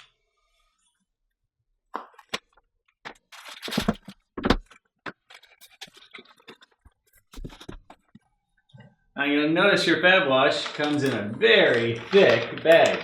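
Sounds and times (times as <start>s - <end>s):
scraping of components: 5.1s - 8.2s, 10.4s - 13.0s
packaging rustling: 10.5s - 13.0s.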